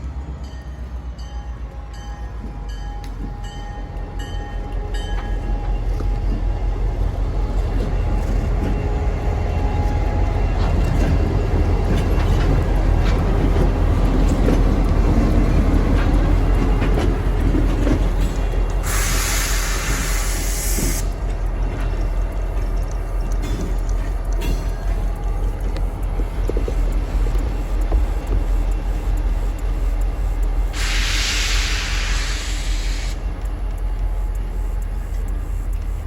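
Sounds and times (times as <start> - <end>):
diesel locomotive rumble: 0.0 - 36.0
locomotive bell ringing: 0.4 - 6.7.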